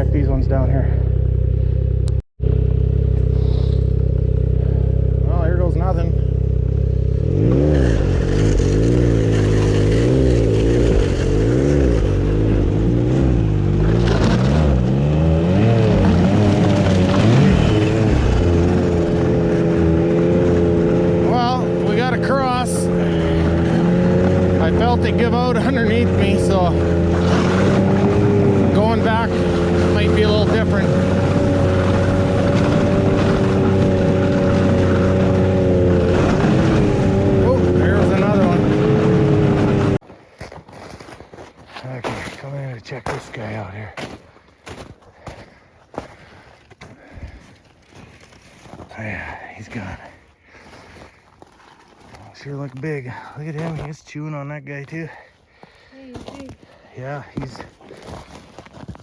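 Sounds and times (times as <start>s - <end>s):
snowmobile engine revving: 0.0s - 40.0s.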